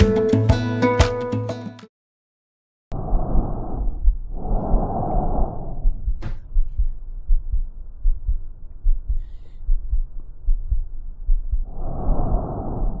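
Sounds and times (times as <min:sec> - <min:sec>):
breath sound through stethoscope: 0:03.0 - 0:06.2, 0:09.0 - 0:10.1, 0:11.7 - 0:13.0
heartbeat thumping: 0:03.8 - 0:04.9, 0:05.8 - 0:13.0.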